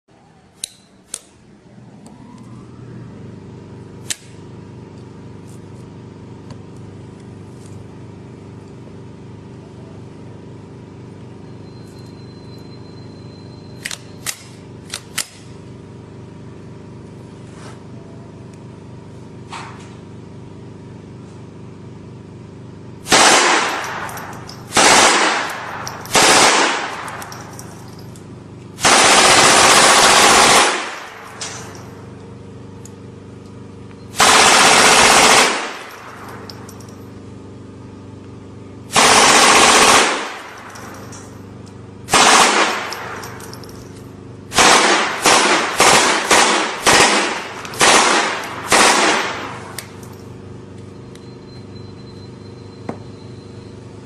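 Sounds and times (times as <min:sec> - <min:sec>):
steady hum: 0:00.1 - 0:54.0
toy machine gun bursts: 0:23.1 - 0:27.9, 0:28.8 - 0:31.8, 0:34.2 - 0:36.5, 0:38.9 - 0:41.2, 0:42.1 - 0:43.8, 0:44.5 - 0:49.8
sharp clicks: 0:23.1 - 0:28.2.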